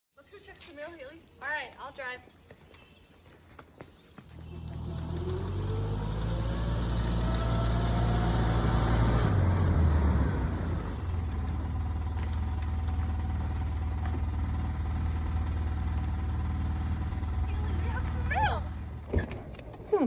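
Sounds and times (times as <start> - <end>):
motor vehicle driving off: 4.2 - 19.6.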